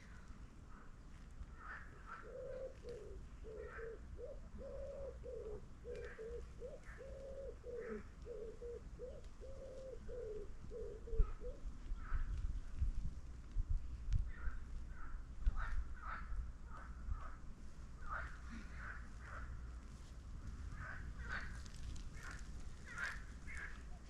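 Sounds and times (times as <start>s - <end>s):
dove cooing: 1.5s - 12.4s, 20.7s - 24.0s
small birds chirping: 1.5s - 12.4s.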